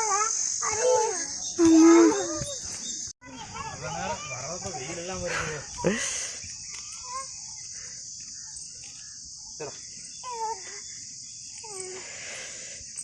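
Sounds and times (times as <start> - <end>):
high-pitched insect chorus: 0.0 - 13.0.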